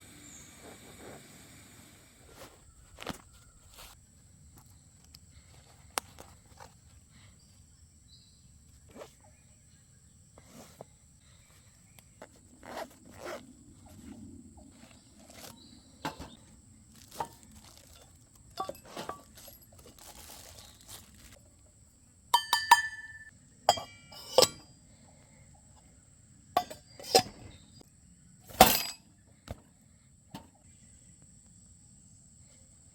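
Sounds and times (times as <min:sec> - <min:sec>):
mug knocking and clinking: 0:22.4 - 0:24.6.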